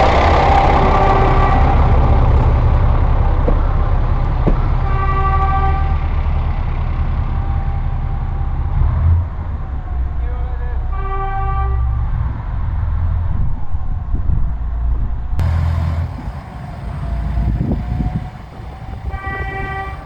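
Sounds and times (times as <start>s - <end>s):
diesel railcar engine rumble: 0.0s - 20.0s
train horn: 0.8s - 2.1s, 4.8s - 6.1s, 10.8s - 12.1s, 15.4s - 20.0s.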